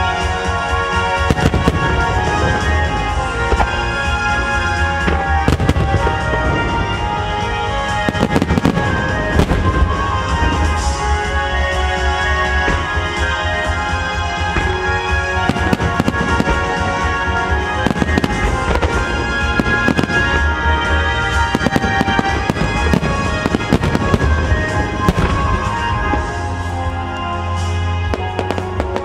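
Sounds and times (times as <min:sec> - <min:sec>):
loud music: 0:00.0 - 0:29.0
firework shells bursting: 0:21.1 - 0:26.3.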